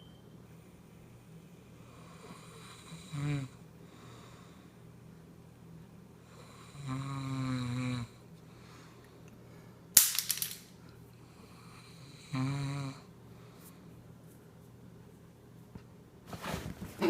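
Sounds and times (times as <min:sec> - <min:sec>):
person snoring: 0:02.0 - 0:03.6, 0:06.3 - 0:08.2, 0:12.0 - 0:13.1.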